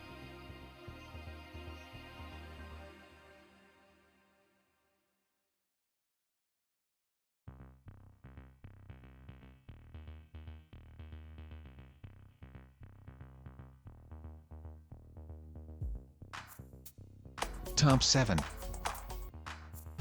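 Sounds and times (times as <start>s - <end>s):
electronic music with drum-machine beat: 15.8s - 20.0s.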